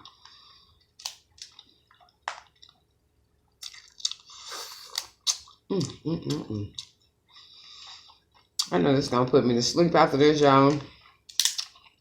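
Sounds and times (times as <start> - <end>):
wet chewing and smacking: 0.0 - 8.8, 10.7 - 12.0.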